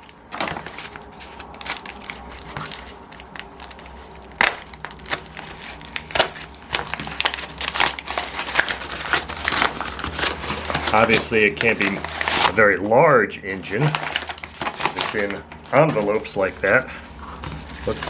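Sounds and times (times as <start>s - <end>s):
envelope snapping: 0.0s - 12.6s, 13.8s - 16.2s
envelope crinkling: 0.0s - 12.9s, 13.5s - 18.0s.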